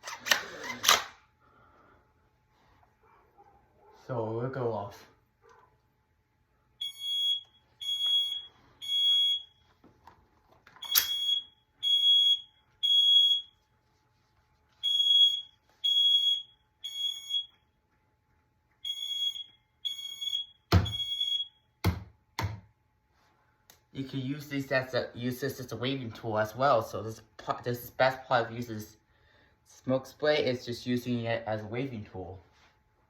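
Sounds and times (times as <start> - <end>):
smoke alarm beeping: 6.8 - 9.7, 10.8 - 13.6, 14.8 - 17.7, 18.8 - 21.8.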